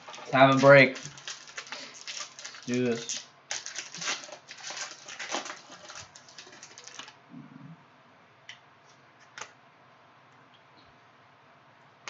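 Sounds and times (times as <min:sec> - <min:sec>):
wrapper being torn open: 0:00.0 - 0:07.2.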